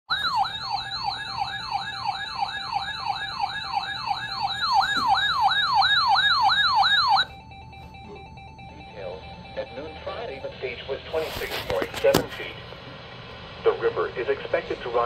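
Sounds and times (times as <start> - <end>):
electronic siren sweeping down: 0.1 - 10.8.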